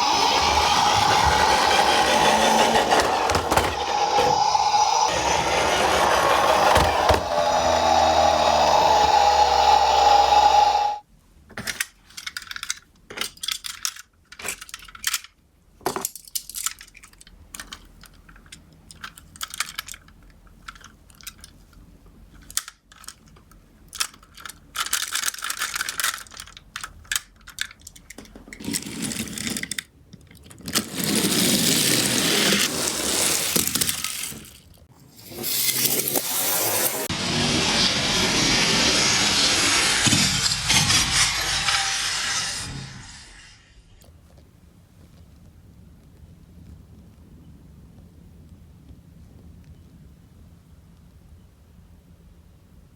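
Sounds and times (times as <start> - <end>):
toy cars rolling and clattering: 0.0 - 10.8, 11.6 - 37.1
siren: 0.0 - 11.0.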